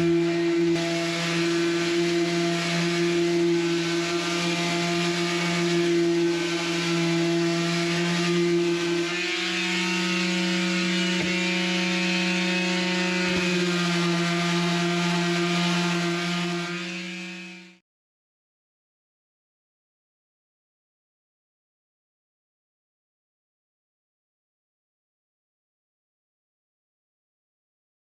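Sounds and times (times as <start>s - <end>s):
electric sander humming: 0.0s - 17.8s.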